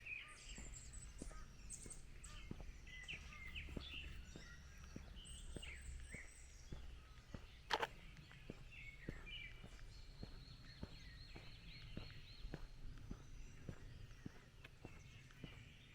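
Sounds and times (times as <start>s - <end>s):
footsteps on a path: 0.0s - 15.9s
small birds chirping and trilling: 0.0s - 15.9s
sharp click: 7.7s - 7.9s.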